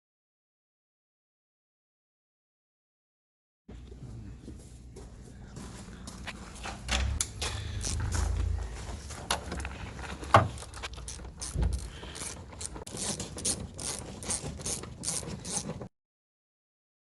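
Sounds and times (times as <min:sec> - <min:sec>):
ratchet wrench clicking: 0:07.8 - 0:08.2, 0:10.5 - 0:15.8.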